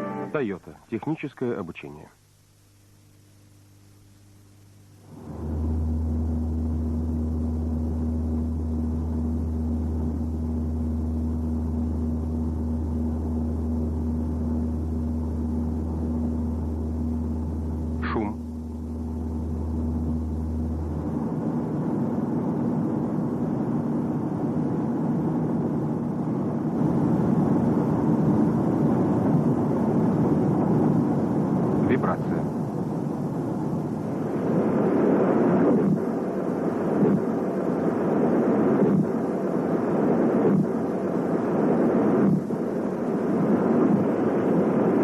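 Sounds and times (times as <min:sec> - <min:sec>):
low drone: 0:00.0 - 0:00.5, 0:05.0 - 0:45.0
higher hum: 0:00.0 - 0:01.0, 0:03.2 - 0:45.0
moving vehicle rumbling: 0:05.1 - 0:22.7.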